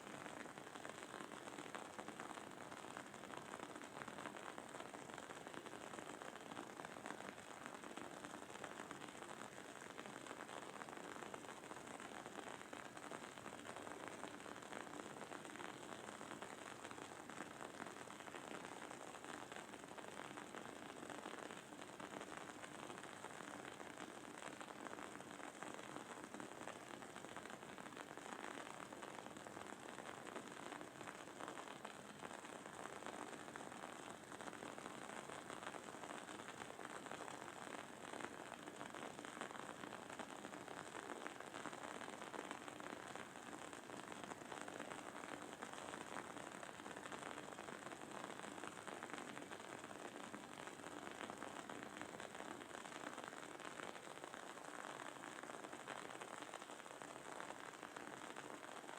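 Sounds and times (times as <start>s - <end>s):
faint sizzle: 0.0s - 58.9s.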